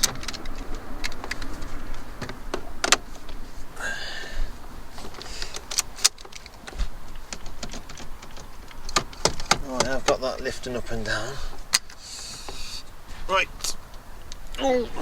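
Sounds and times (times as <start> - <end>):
plastic and metal parts clicking: 0.0 - 3.4, 5.0 - 10.3.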